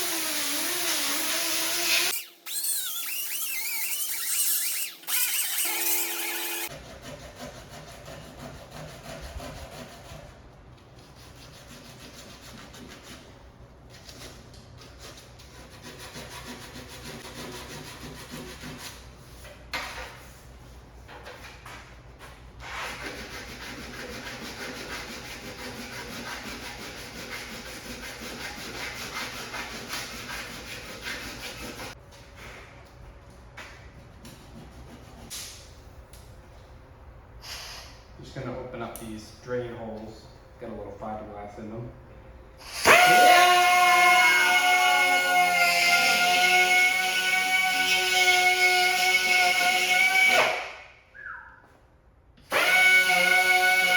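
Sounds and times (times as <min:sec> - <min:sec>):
sanding fiberglass by hand: 0:00.0 - 0:10.4, 0:11.0 - 0:13.4, 0:14.2 - 0:19.4, 0:22.6 - 0:32.0, 0:34.3 - 0:35.3.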